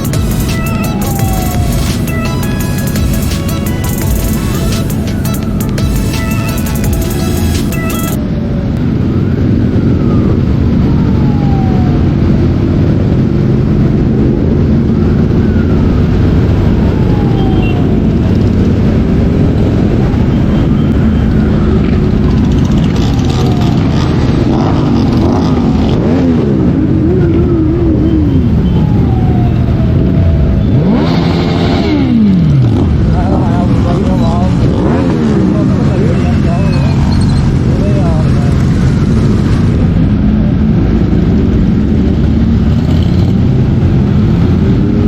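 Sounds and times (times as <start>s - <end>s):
wailing siren-like tone: 0.0s - 12.8s, 14.6s - 40.6s
motorcycle engines running: 0.0s - 45.0s
road and wind noise: 0.0s - 45.0s.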